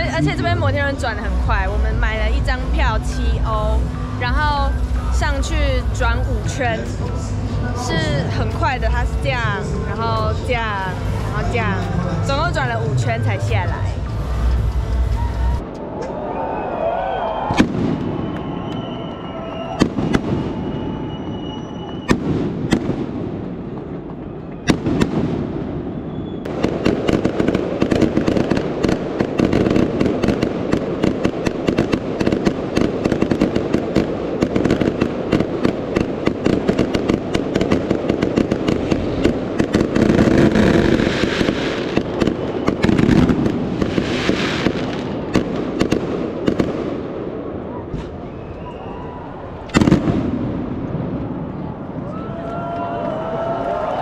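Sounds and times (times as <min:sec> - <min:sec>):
fireworks bangs: 0:17.3 - 0:54.0
fireworks crackling pops: 0:19.6 - 0:21.2, 0:21.8 - 0:23.2, 0:26.4 - 0:47.0, 0:49.6 - 0:51.0.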